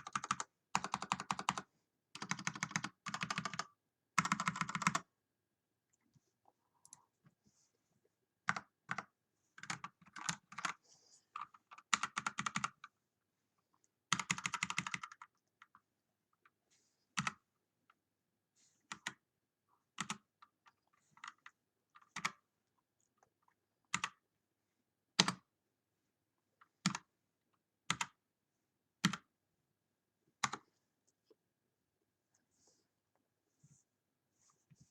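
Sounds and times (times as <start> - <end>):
mechanical keyboard typing: 0.0 - 5.1, 8.4 - 10.8, 11.4 - 12.9, 14.1 - 15.8, 19.9 - 20.4, 21.2 - 22.4, 23.9 - 24.2, 25.2 - 25.4, 26.8 - 27.1, 27.9 - 28.2, 29.0 - 29.3.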